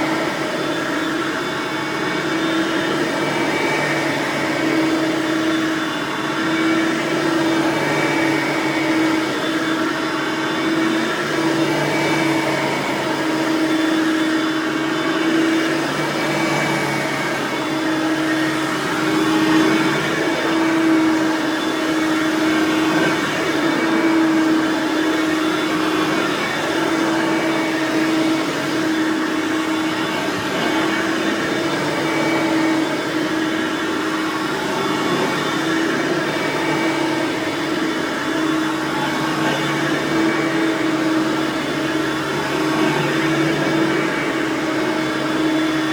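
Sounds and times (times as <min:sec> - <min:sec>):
vacuum cleaner motor whine: 0:00.0 - 0:45.9.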